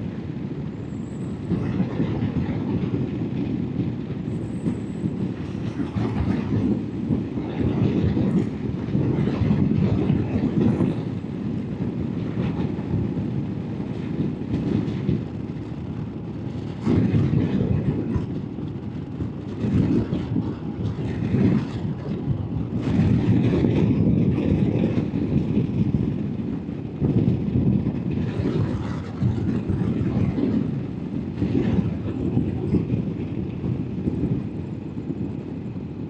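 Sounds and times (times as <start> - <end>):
wind noise: 0.0 - 36.0.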